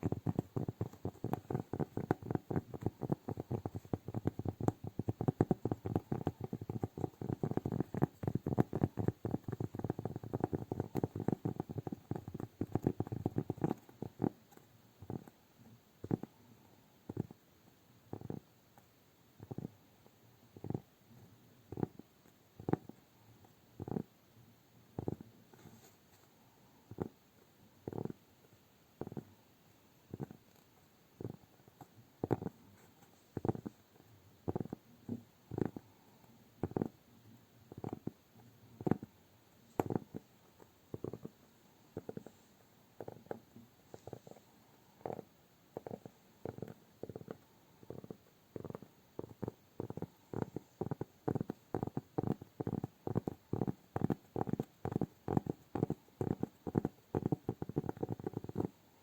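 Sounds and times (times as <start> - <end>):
hands tapping on cork: 0.0 - 15.4, 22.6 - 23.0, 27.8 - 28.2, 31.2 - 33.8, 34.5 - 35.9, 36.6 - 37.0, 37.7 - 38.2, 38.8 - 39.1, 39.8 - 40.3, 40.9 - 41.4, 42.0 - 42.4, 43.0 - 44.4, 45.0 - 58.7.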